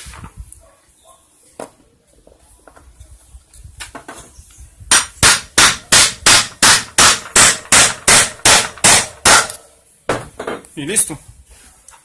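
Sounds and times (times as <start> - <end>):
hammer blows: 4.9 - 10.3.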